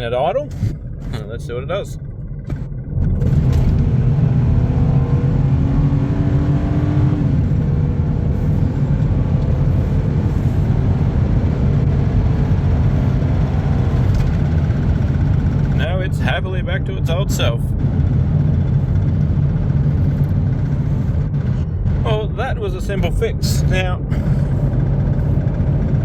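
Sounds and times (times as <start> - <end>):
car engine accelerating hard: 2.4 - 26.0.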